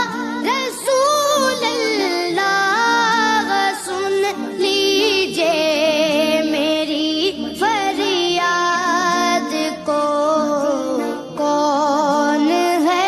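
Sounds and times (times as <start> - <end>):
solo voice singing devotional song: 0.0 - 13.0.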